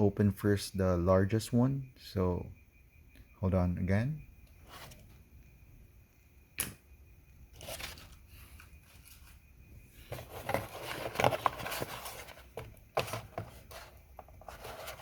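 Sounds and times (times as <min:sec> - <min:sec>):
sharp snap: 0:06.6 - 0:06.8
cardboard packaging rustling: 0:07.5 - 0:09.4, 0:10.0 - 0:15.0.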